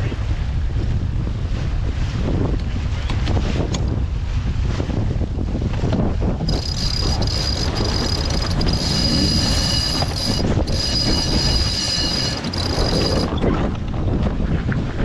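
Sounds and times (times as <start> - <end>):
sailing boat rushing through water: 0.0 - 15.0
wind buffeting microphone: 0.0 - 15.0
high-pitched whine: 6.5 - 13.4.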